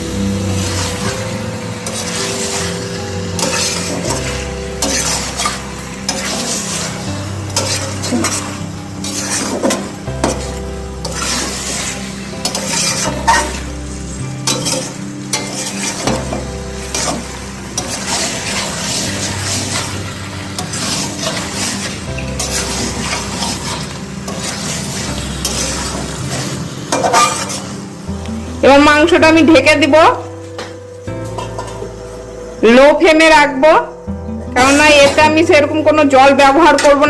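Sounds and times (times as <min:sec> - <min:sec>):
meat sizzling in hot oil: 0:00.0 - 0:29.2
spatula scraping a pan: 0:01.8 - 0:13.7, 0:14.4 - 0:27.9.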